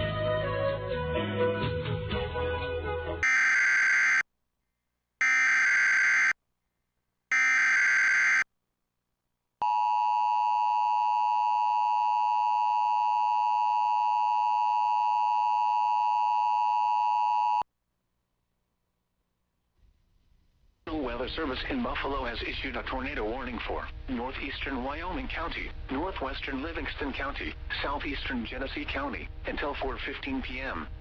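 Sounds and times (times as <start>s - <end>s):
shrill warbling data bursts: 3.2s - 4.2s, 5.2s - 6.3s, 7.3s - 8.4s
steady two-tone electronic tone: 3.2s - 4.2s, 5.2s - 6.4s, 7.3s - 8.4s.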